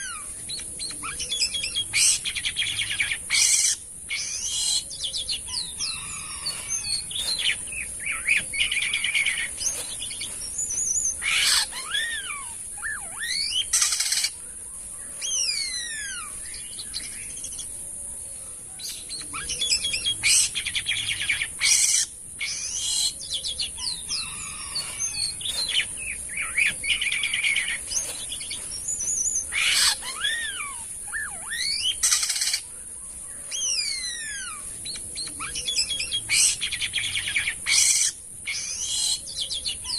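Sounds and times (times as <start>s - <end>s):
starling singing: 0.0s - 14.4s, 19.3s - 32.7s
steady high hiss: 0.0s - 39.2s.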